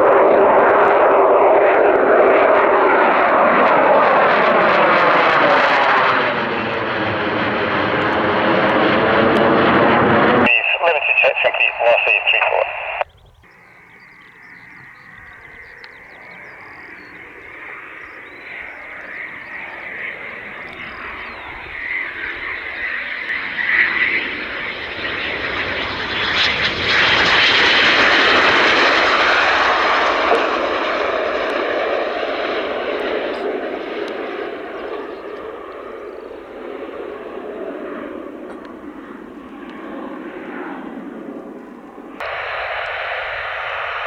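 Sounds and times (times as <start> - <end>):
jet aircraft roar: 0.0 - 44.0.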